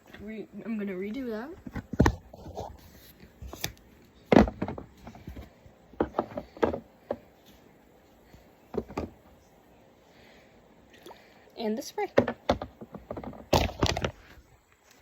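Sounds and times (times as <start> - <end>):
bottles and jars knocking: 4.3 - 5.4, 12.1 - 14.1.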